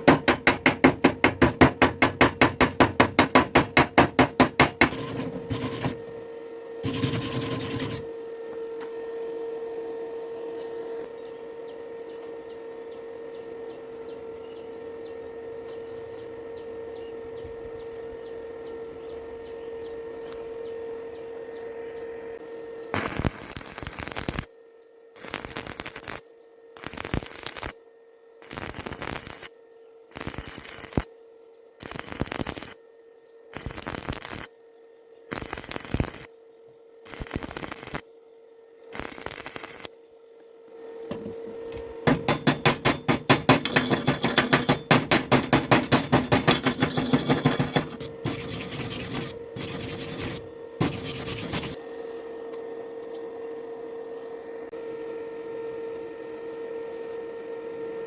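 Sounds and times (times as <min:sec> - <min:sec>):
steady hum: 0:00.0 - 0:12.0, 0:31.7 - 0:56.3
welding arc crackling: 0:22.9 - 0:24.5, 0:25.2 - 0:26.2, 0:26.8 - 0:27.8, 0:28.4 - 0:29.5, 0:30.1 - 0:31.1, 0:31.8 - 0:32.8, 0:33.5 - 0:34.5, 0:35.3 - 0:36.3, 0:37.0 - 0:38.0, 0:38.9 - 0:39.9.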